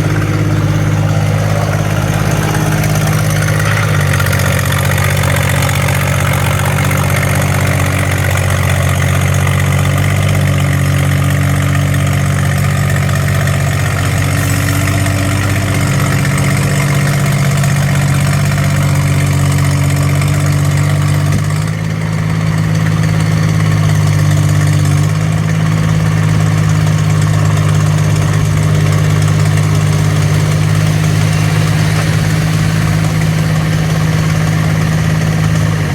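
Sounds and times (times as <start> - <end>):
excavator diesel engine running: 0.0 - 35.9.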